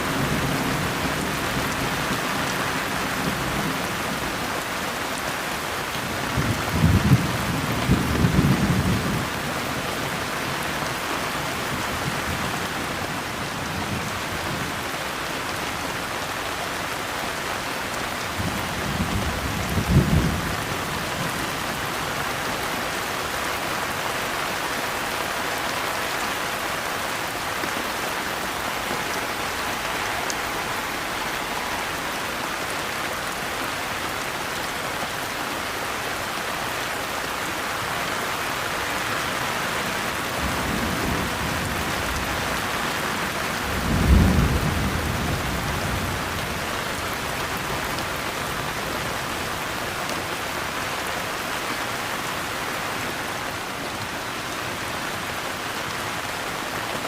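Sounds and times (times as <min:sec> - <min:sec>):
heavy rain falling: 0:00.0 - 0:57.0
thunder rumbling: 0:43.6 - 0:46.5.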